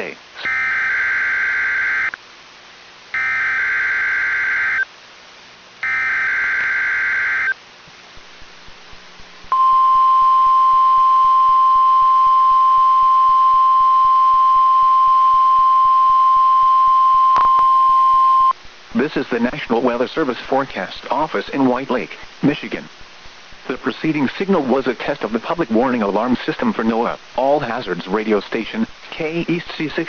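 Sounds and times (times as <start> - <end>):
steady warning alarm tone: 0.4 - 2.1, 3.2 - 4.8, 5.8 - 7.6.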